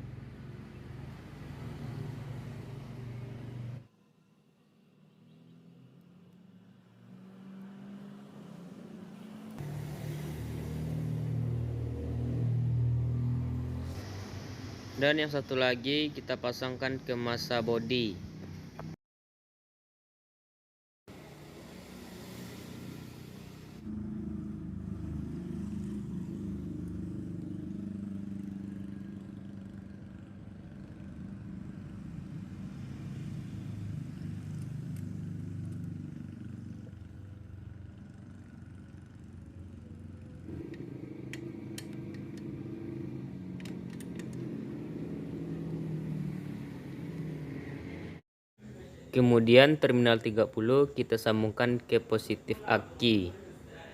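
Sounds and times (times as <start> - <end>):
vehicle engine rumbling: 34.3 - 48.2.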